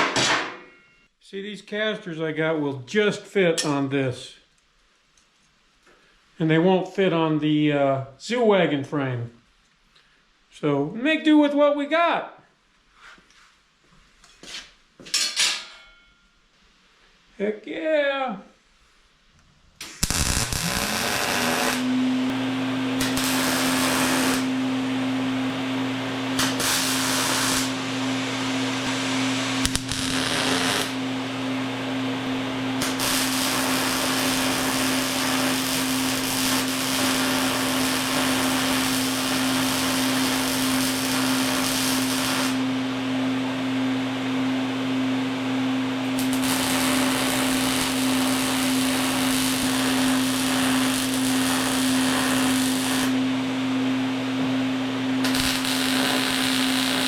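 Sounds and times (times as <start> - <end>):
angle grinder grinding steel: 20.0 - 21.9, 22.8 - 24.6, 26.4 - 27.9, 28.8 - 31.0, 32.7 - 42.6, 46.2 - 53.2, 55.2 - 57.0.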